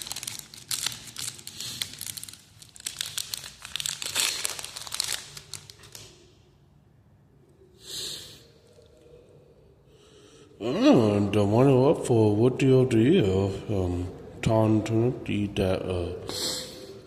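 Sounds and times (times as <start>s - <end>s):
plastic wrapper crinkling and tearing: 0.0s - 6.2s.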